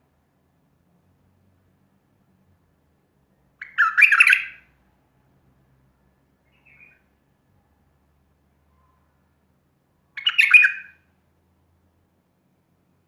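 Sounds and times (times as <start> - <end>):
bulbul warbling song: 3.6 - 4.6, 10.2 - 11.0
faint bird call: 6.4 - 7.9, 8.6 - 9.4.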